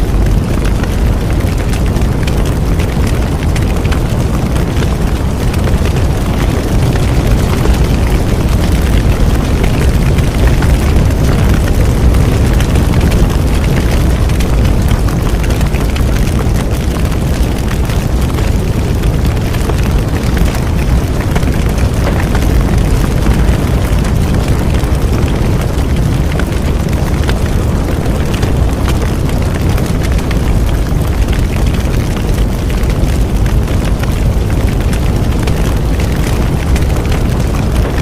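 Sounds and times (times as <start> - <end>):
burning wood crackling and popping: 0.0 - 38.0
flames roaring: 0.0 - 38.0.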